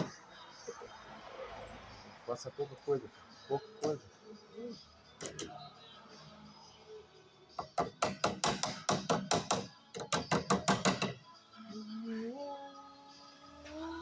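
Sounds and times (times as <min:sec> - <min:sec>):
hammer tapping on metal: 0:07.6 - 0:11.2.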